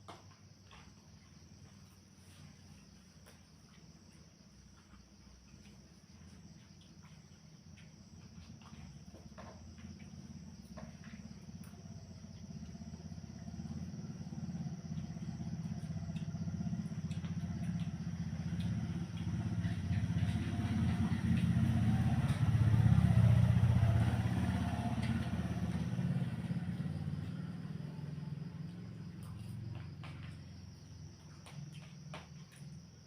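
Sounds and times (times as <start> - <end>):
vehicle engine passing by: 7.8 - 32.6.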